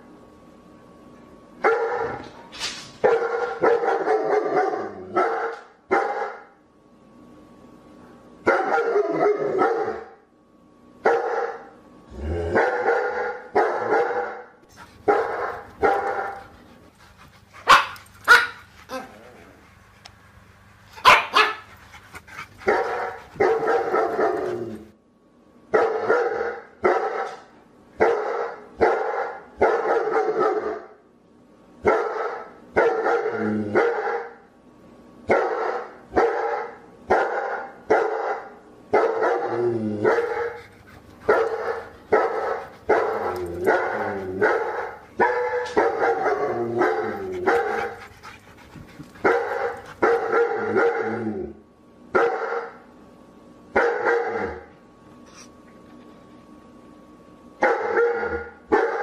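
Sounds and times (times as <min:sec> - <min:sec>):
dog barking: 0:01.6 - 0:02.2, 0:03.0 - 0:06.5, 0:08.5 - 0:10.1, 0:11.0 - 0:11.7, 0:12.6 - 0:14.5, 0:15.1 - 0:16.4, 0:17.6 - 0:19.1, 0:21.0 - 0:21.7, 0:25.7 - 0:27.4, 0:28.0 - 0:30.9, 0:31.8 - 0:34.4, 0:35.3 - 0:39.5, 0:41.3 - 0:48.0, 0:49.2 - 0:51.0, 0:52.2 - 0:52.8, 0:53.8 - 0:54.7, 0:57.6 - 0:59.0.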